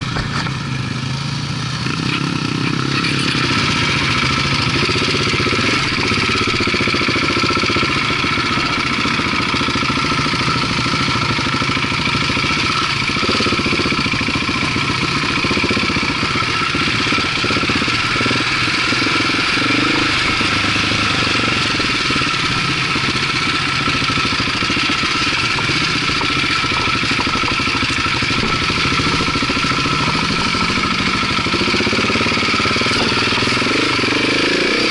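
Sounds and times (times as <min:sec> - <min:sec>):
motorcycle engine running: 0:00.0 - 0:34.9
high whine: 0:17.0 - 0:34.9.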